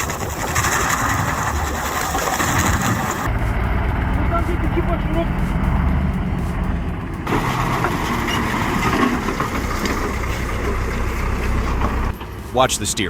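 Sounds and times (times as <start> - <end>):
heavy vehicle engine running: 1.0 - 13.0
noisy hissing engine: 3.0 - 13.0.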